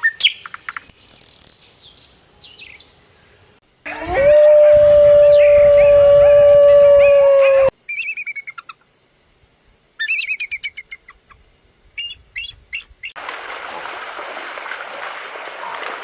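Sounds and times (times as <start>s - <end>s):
songbird chirping trills: 0.0s - 3.5s
steady noisy hiss: 0.0s - 16.0s
howl-like tone: 3.9s - 7.7s.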